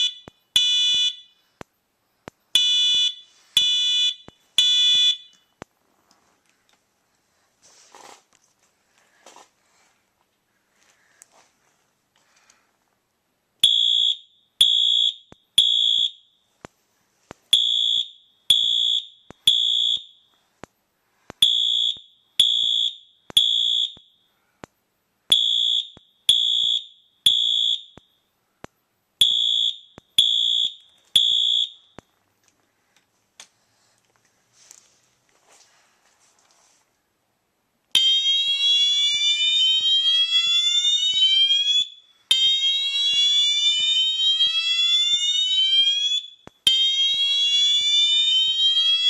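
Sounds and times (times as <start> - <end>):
fire alarm high-pitched beeps: 0.0 - 1.4, 2.4 - 5.5, 13.6 - 16.4, 17.5 - 20.4, 21.4 - 24.2, 25.3 - 28.3, 29.2 - 32.0, 38.0 - 49.0.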